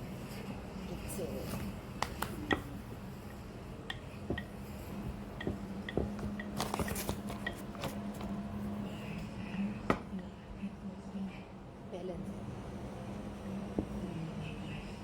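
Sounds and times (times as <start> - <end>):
hands tapping dough and baking pan: 3.9 - 4.6, 5.4 - 7.5.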